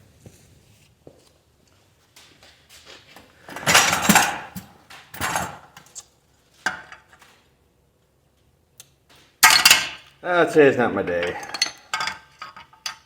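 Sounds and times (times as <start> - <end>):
steel tools clanking on metal: 3.5 - 5.8, 11.0 - 13.0.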